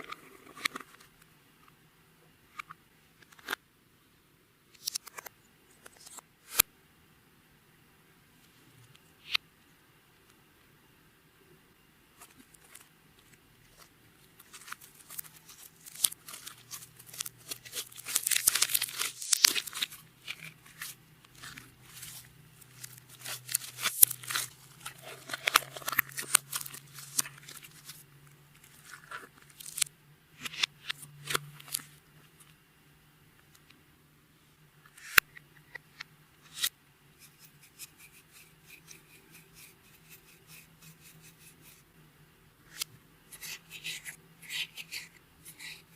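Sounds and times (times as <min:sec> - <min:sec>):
slime crackling and popping: 0:14.5 - 0:20.5, 0:22.8 - 0:27.9.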